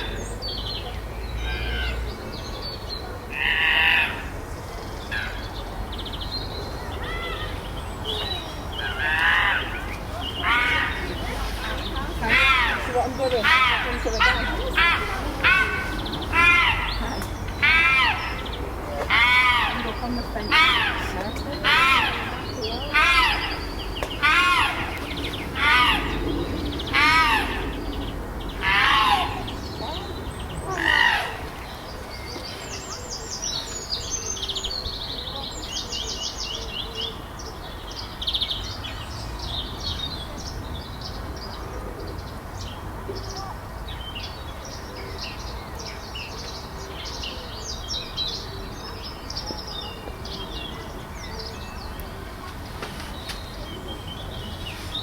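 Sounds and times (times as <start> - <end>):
chimpanzees calling: 8.2 - 27.8.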